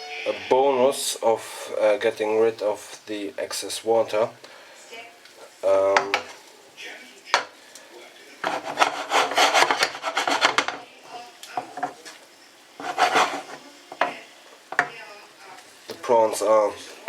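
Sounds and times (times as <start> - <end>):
spatula scraping frying pan: 8.4 - 10.8, 12.8 - 14.2.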